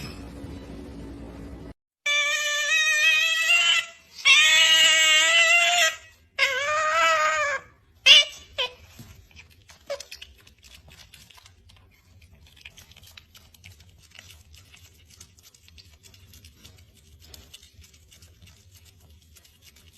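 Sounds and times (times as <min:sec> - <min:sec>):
otter squeak: 0:02.1 - 0:10.3.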